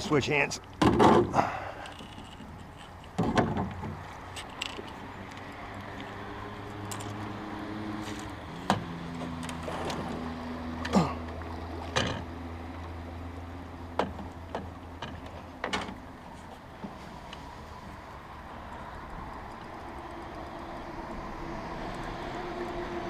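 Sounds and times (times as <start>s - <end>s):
fishing rod knocks and clacks: 0.6s - 7.4s, 13.9s - 17.0s.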